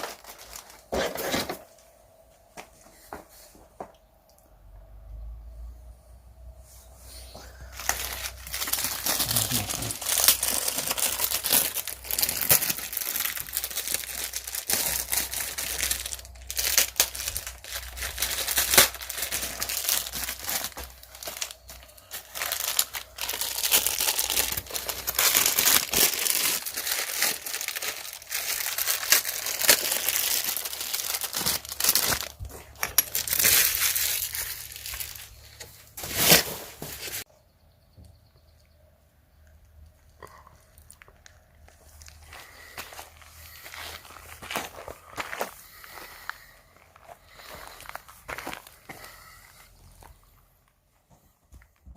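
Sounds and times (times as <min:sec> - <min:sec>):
packaging crinkling: 0:00.0 - 0:01.6, 0:07.5 - 0:37.2.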